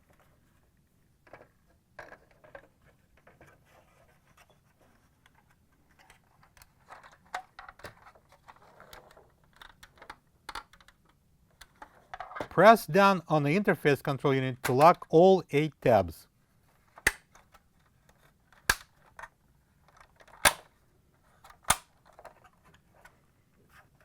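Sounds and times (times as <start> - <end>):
plastic parts clicking and scraping: 1.2 - 12.6, 16.7 - 24.0.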